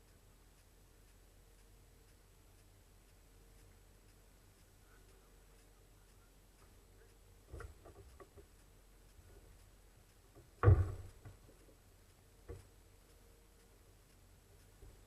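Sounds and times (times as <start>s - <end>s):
loud thump: 10.6s - 11.1s
knocks: 10.6s - 11.6s.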